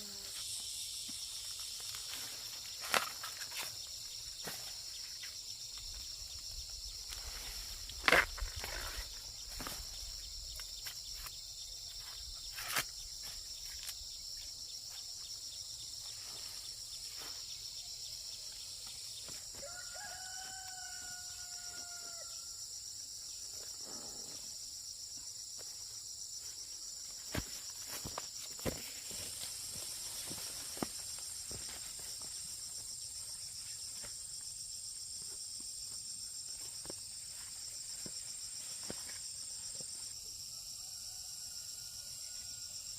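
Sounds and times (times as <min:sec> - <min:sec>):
high drone of insects: 0:00.0 - 0:42.9
rooster crowing: 0:19.6 - 0:22.6, 0:40.5 - 0:42.8.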